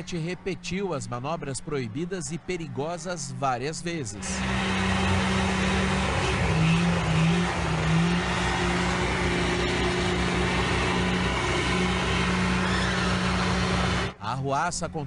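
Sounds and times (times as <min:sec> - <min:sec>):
truck engine revving hard: 0:04.2 - 0:14.2.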